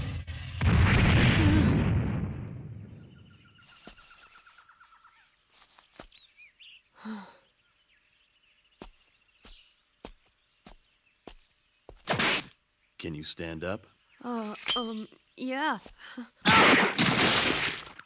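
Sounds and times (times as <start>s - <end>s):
birds trilling: 2.9s - 12.1s.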